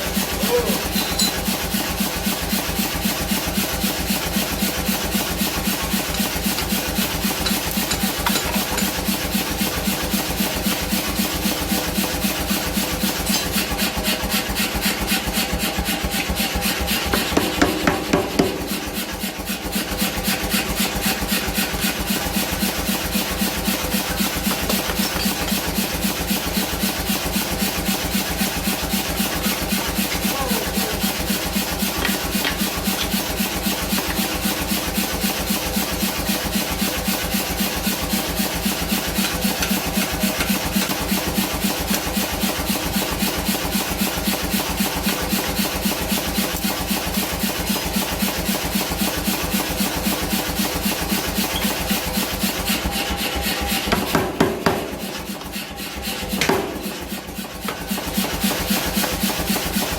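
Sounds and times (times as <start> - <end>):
grinder rasping on steel: 0.0 - 59.9.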